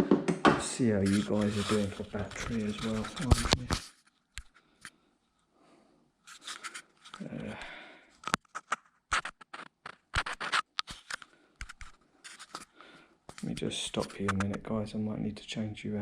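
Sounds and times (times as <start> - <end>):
camera handling clicks and scrapes: 1.0 - 4.9, 6.3 - 7.6, 8.2 - 12.7, 13.3 - 14.6.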